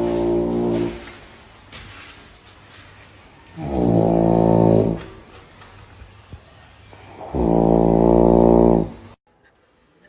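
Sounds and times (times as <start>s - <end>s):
loud snoring: 7.1s - 9.0s.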